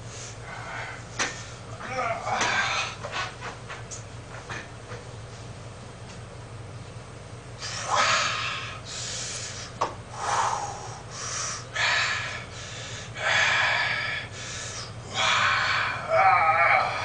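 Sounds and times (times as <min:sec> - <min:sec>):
man breathing hard: 0:00.0 - 0:03.1, 0:07.6 - 0:16.1.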